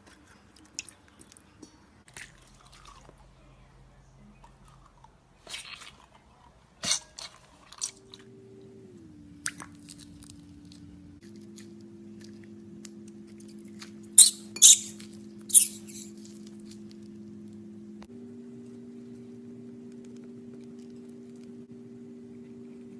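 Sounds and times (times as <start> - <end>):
soft low drone: 8.0 - 14.2, 16.1 - 22.9.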